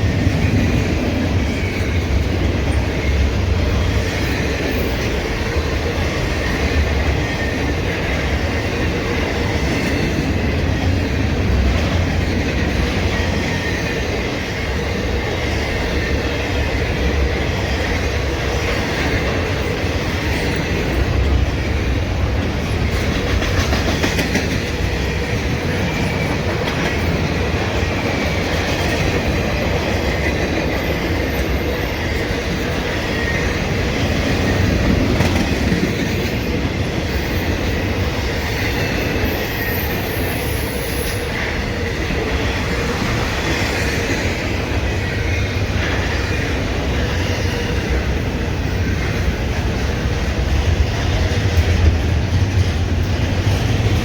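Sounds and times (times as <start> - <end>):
train wheels rumbling on rails: 0.0 - 54.0.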